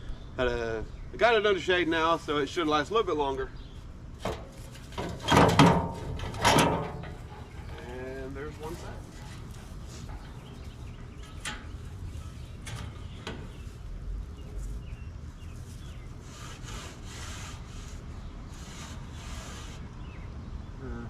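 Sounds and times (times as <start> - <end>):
steady low rumble: 0.0 - 16.3
scraping and rubbing of parts: 4.2 - 14.8, 15.6 - 19.9.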